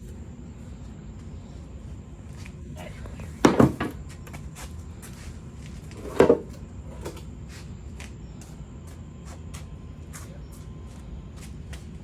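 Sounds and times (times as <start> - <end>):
handling noise: 3.3 - 4.3, 5.8 - 7.2.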